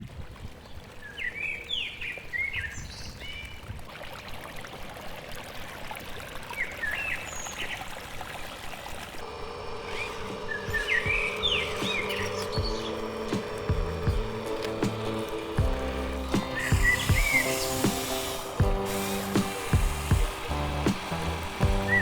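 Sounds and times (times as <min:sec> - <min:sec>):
birds chirping: 0:09.2 - 0:22.0.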